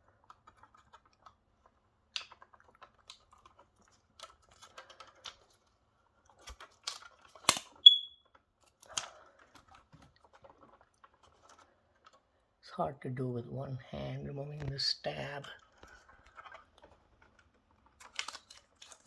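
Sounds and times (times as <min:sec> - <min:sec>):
plastic clicks and scratches: 0:00.0 - 0:12.3, 0:14.6 - 0:19.0
smoke alarm chirp: 0:07.8 - 0:08.2.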